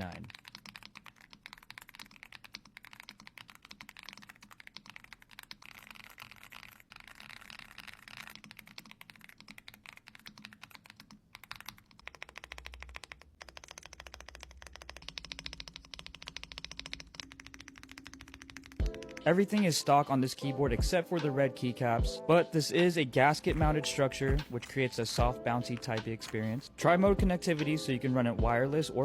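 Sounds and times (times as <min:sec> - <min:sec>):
fast mechanical keyboard typing: 0:00.0 - 0:20.4.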